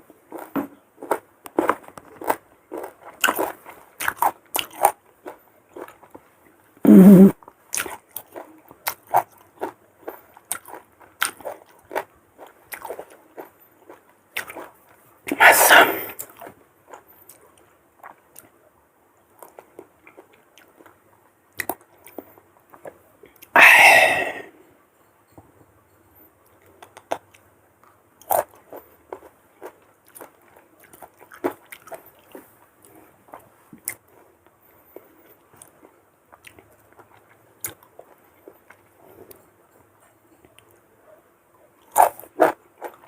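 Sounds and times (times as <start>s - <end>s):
chewing crunches and clicks: 0.3s - 6.6s, 7.4s - 15.0s, 16.2s - 18.6s, 19.3s - 23.5s, 26.4s - 40.8s, 41.8s - 43.0s
crunching bite of mango: 41.9s - 43.0s.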